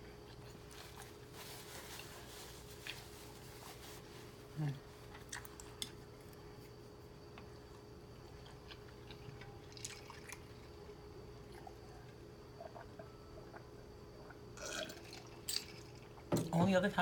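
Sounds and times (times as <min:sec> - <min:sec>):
faint steady hum: 0:00.0 - 0:17.0
person chewing noodles: 0:05.1 - 0:06.1, 0:07.3 - 0:16.2.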